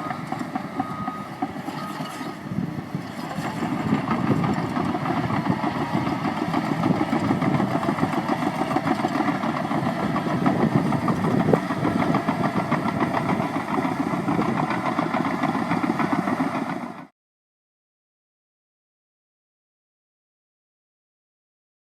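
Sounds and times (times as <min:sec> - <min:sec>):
diesel engine running: 0:00.0 - 0:17.1.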